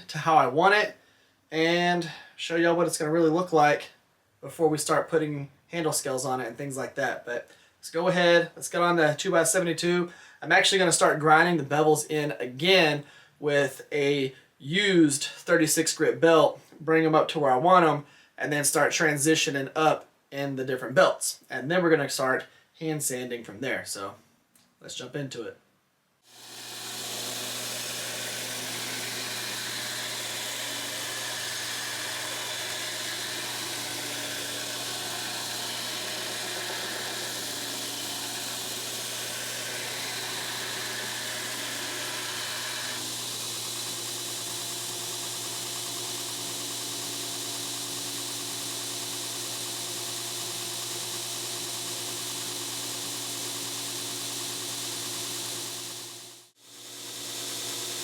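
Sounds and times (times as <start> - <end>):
belt grinder motor hum: 26.3 - 58.0.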